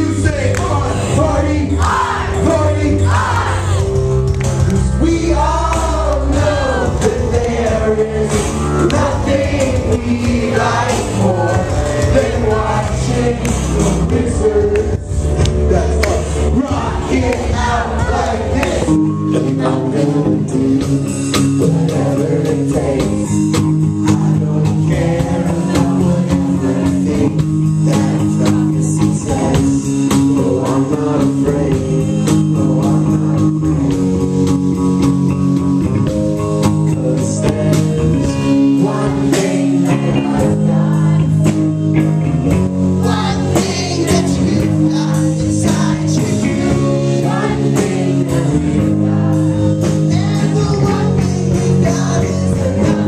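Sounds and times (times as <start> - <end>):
bass guitar: 0.0 - 53.0
electric guitar: 0.0 - 53.0
steady drums: 0.0 - 53.0
person singing: 4.7 - 34.1, 43.0 - 53.0.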